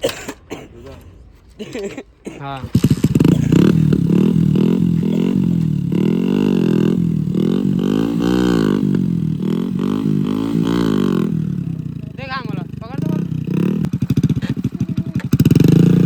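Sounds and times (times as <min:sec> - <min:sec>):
motorcycle engine revving: 0:02.5 - 0:16.0.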